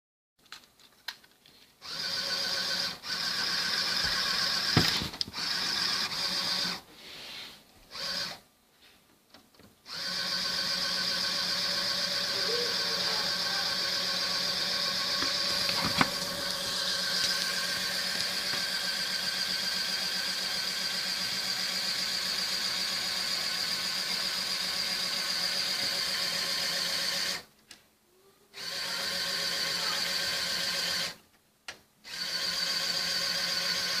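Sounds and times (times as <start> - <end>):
small electric motor whining: 1.8 - 6.8, 9.9 - 27.5, 28.5 - 31.2, 32.1 - 34.0.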